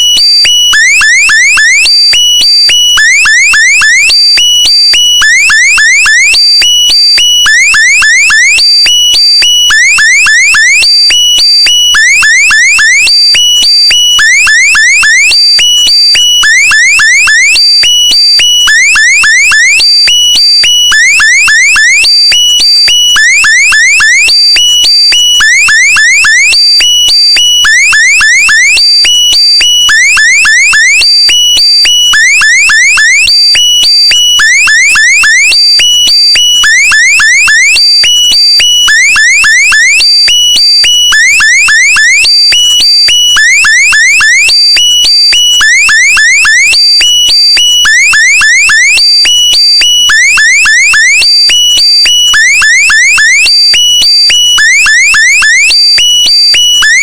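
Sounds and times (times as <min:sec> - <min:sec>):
electronic alarm rising chirps: 0:00.7 - 0:02.1, 0:03.0 - 0:04.3, 0:05.2 - 0:06.6, 0:09.7 - 0:11.1, 0:12.0 - 0:17.8, 0:18.7 - 0:20.1, 0:20.9 - 0:22.3, 0:23.2 - 0:24.6, 0:29.9 - 0:31.3, 0:32.1 - 0:40.3, 0:41.1 - 0:42.5, 0:43.3 - 0:44.8, 0:45.6 - 0:49.3, 0:50.0 - 0:57.0.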